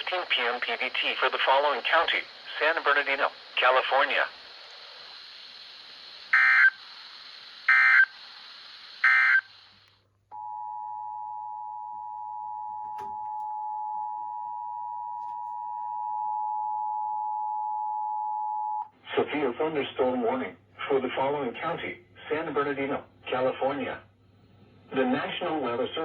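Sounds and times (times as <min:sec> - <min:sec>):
faint hiss: 0:00.0 - 0:10.0.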